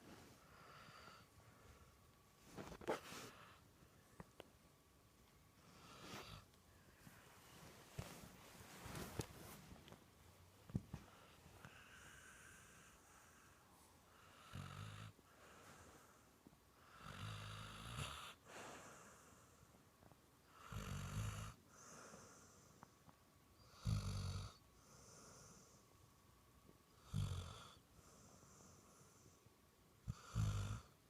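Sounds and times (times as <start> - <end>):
soft breathing: 0.0 - 4.4, 5.5 - 10.0, 10.6 - 17.0, 18.3 - 20.2, 21.6 - 23.3, 24.7 - 26.2, 27.7 - 29.6
dog snoring: 14.2 - 16.1, 16.8 - 19.5, 20.5 - 22.8, 23.6 - 25.8, 27.0 - 29.3, 30.0 - 31.0.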